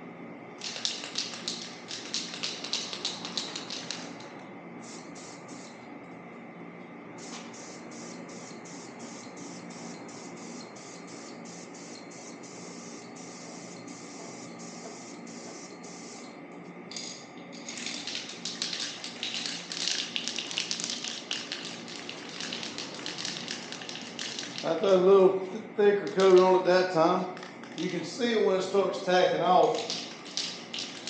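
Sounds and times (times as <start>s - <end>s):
spray paint hissing: 0.6s - 4.2s, 4.8s - 5.8s, 7.2s - 16.2s, 17.9s - 24.8s, 29.6s - 31.0s.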